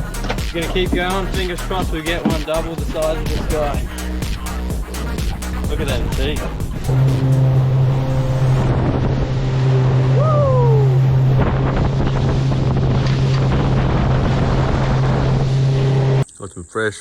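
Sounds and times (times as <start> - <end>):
boat motor humming: 0.0 - 16.2
water rushing: 0.0 - 16.2
wind buffeting microphone: 0.0 - 16.2
short falling cry: 10.1 - 11.1.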